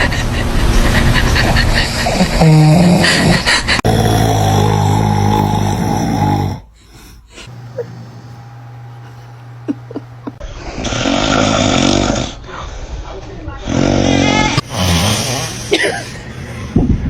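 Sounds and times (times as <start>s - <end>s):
man snoring loudly: 2.4s - 8.4s, 10.7s - 12.4s, 13.6s - 15.8s.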